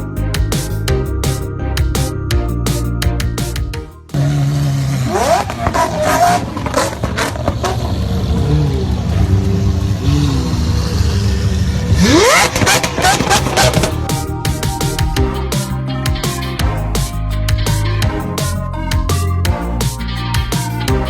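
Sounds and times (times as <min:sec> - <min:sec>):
vehicle engine revving: 0:04.1 - 0:14.3.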